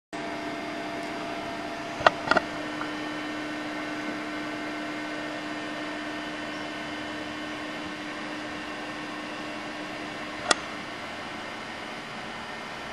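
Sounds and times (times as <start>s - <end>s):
steady electrical hum: 0.2s - 12.9s
sharp clicks: 10.4s - 10.7s.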